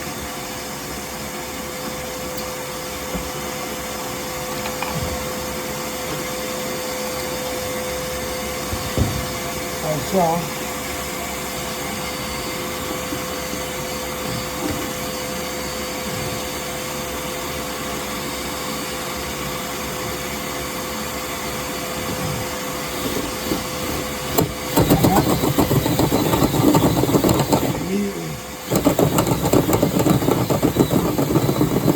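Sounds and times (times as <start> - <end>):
vacuum whining: 0.0 - 31.9
rattling mechanical noise: 23.0 - 31.9.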